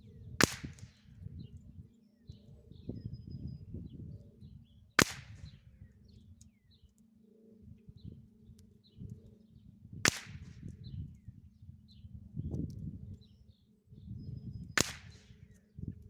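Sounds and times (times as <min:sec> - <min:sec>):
birds chirping: 0:00.0 - 0:10.0, 0:10.6 - 0:16.0
rifle shots: 0:00.4 - 0:01.0, 0:05.0 - 0:05.5, 0:10.1 - 0:10.7, 0:14.8 - 0:15.4.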